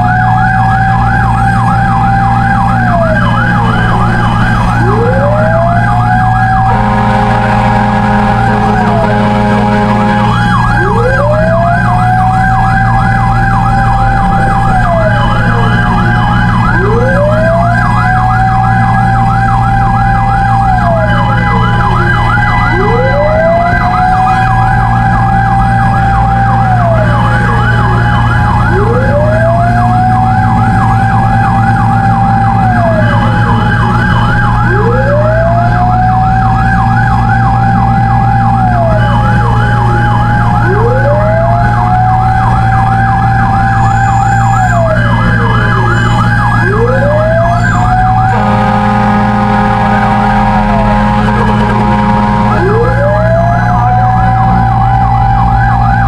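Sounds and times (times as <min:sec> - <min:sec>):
engine drone: 0:00.0 - 0:56.0
fire truck siren wailing: 0:00.0 - 0:56.0
fire truck siren yelping: 0:00.0 - 0:56.0.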